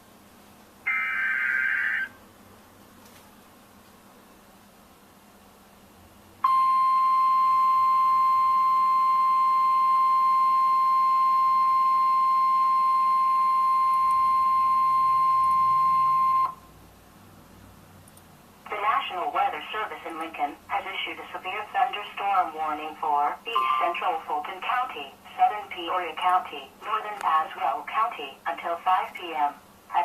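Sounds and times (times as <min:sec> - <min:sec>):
loud steady alarm beep: 0:00.9 - 0:02.1, 0:06.4 - 0:16.6, 0:23.5 - 0:24.0
faint radio hiss: 0:16.5 - 0:30.0.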